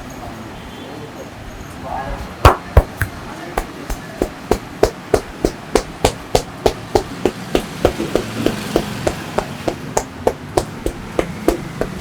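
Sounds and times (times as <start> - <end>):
hands slapping body in massage: 2.4 - 12.0.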